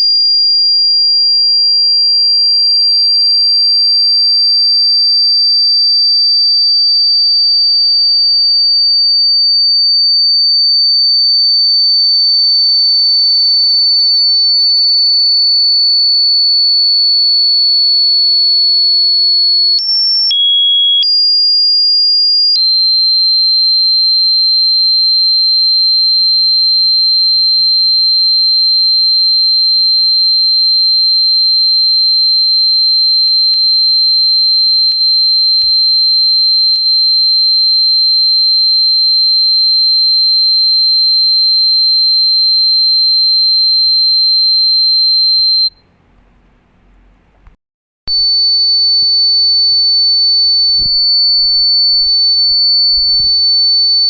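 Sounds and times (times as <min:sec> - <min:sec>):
high-pitched electronic tone: 0:09.5 - 0:22.6, 0:48.1 - 0:54.0.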